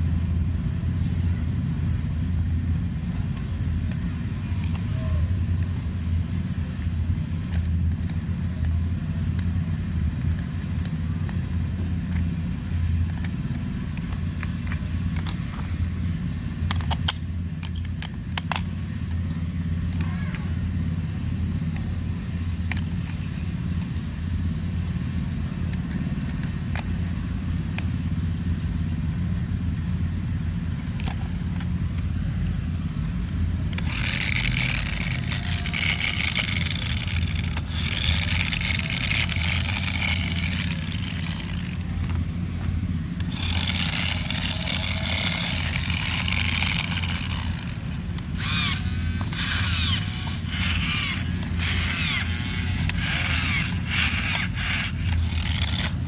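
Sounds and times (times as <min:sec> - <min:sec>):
small electric motor whining: 0:33.7 - 0:42.2, 0:43.2 - 0:56.0.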